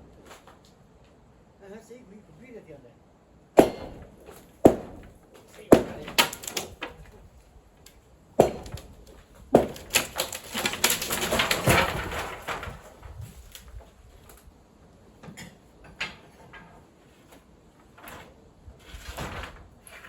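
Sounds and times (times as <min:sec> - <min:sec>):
heavy blows on wood: 0:03.6 - 0:06.6, 0:08.4 - 0:12.9
timbers cracking and clattering: 0:03.6 - 0:14.5.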